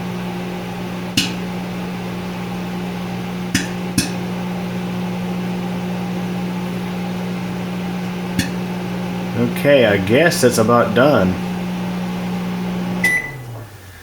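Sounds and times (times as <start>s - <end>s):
microwave oven humming: 0.0s - 14.0s
popcorn kernels popping: 1.2s - 1.6s, 3.5s - 4.3s, 8.2s - 8.7s.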